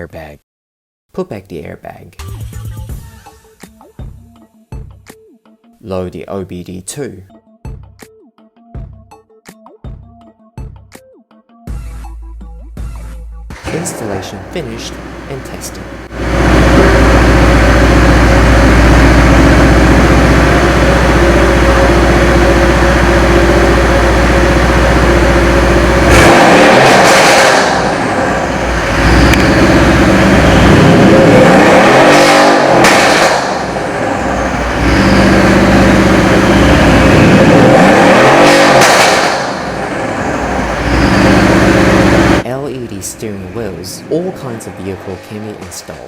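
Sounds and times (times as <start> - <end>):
car engine revving: 13.6 - 42.4.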